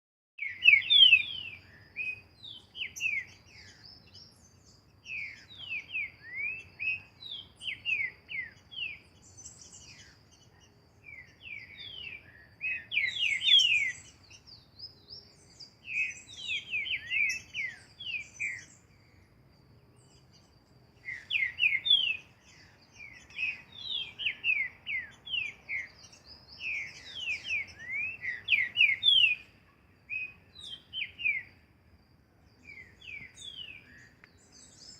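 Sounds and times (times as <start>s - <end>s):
bird singing whistled phrases: 0.4s - 19.2s, 21.0s - 29.5s, 30.1s - 31.5s, 32.6s - 34.9s.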